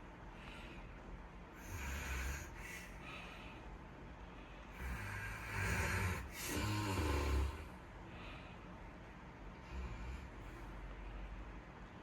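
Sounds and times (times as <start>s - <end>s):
pet snoring: 1.6s - 2.9s, 4.8s - 7.7s.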